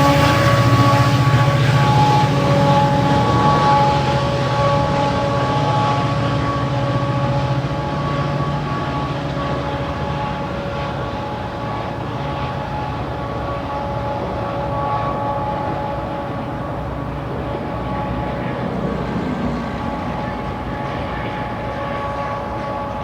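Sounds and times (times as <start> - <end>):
diesel train rumble: 0.0 - 23.0
multi-tone whine: 0.0 - 23.0.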